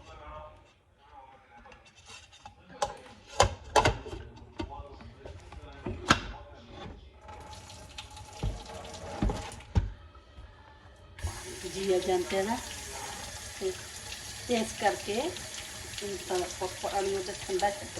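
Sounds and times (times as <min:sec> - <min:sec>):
tap water running into sink: 0:07.3 - 0:09.9, 0:11.2 - 0:17.9.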